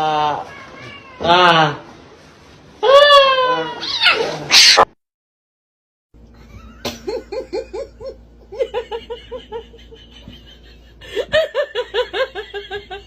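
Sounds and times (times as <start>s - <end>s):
person laughing: 6.4s - 13.0s.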